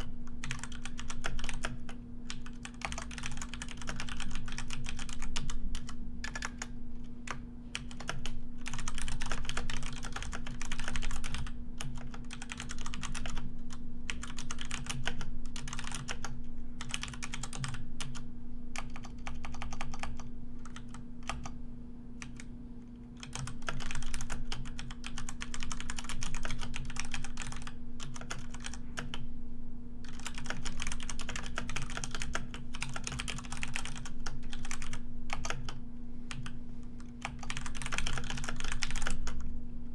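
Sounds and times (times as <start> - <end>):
keyboard typing: 0.0 - 6.7, 7.8 - 13.4, 14.1 - 18.2, 23.2 - 29.2, 30.0 - 36.6, 37.2 - 39.4
steady low hum: 0.0 - 39.9.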